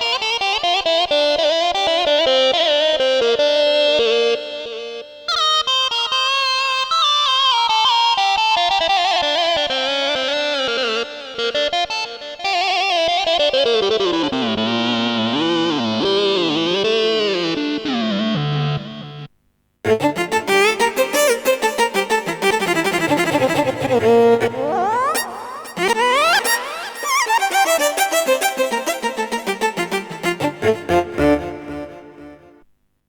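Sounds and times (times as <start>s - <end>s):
fast repeated keyboard notes: 19.9s - 32.5s
keyboard plucked-string melody: 19.9s - 32.6s.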